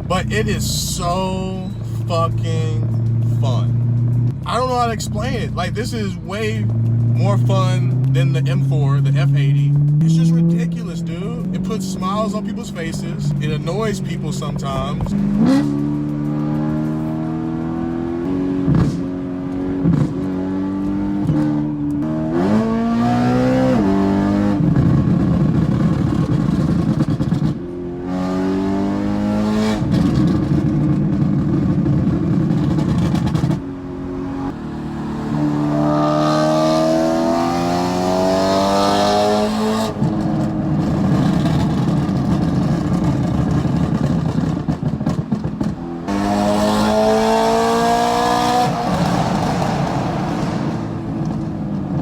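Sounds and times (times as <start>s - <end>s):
car engine revving: 0.0s - 52.0s
exhaust crackles and pops: 24.6s - 27.6s, 29.8s - 33.6s, 39.9s - 46.2s, 48.6s - 52.0s.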